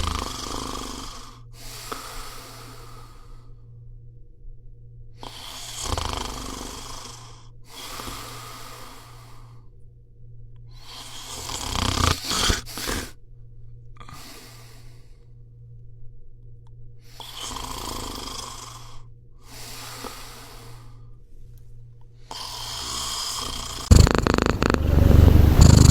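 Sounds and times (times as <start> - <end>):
cat snoring: 0.0 - 3.4, 5.2 - 9.6, 10.8 - 13.2, 17.1 - 21.0, 22.3 - 25.9.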